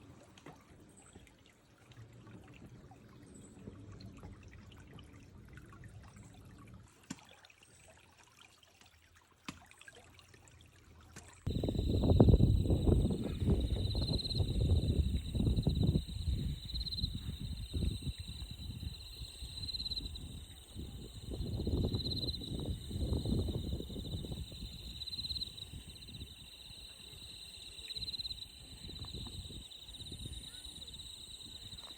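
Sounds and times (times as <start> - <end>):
high insect chirps: 11.5 - 31.9
insects trilling: 11.5 - 31.9.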